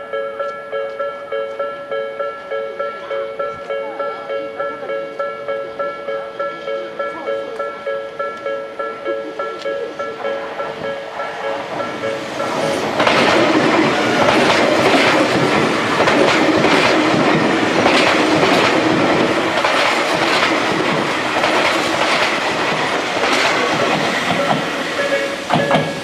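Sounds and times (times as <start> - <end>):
level crossing warning bell: 0.0 - 16.2
train running: 0.0 - 26.0
wheels clacking over rail joints: 9.5 - 26.0.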